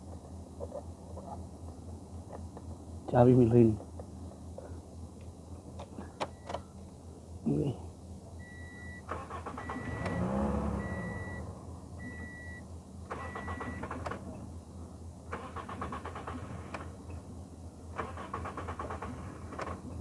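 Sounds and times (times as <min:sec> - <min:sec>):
car engine starting: 0:09.0 - 0:20.0
rapid starter clicking: 0:09.1 - 0:10.2, 0:13.1 - 0:14.3, 0:15.3 - 0:17.0, 0:17.9 - 0:20.0
warning chime beeps: 0:10.8 - 0:12.6.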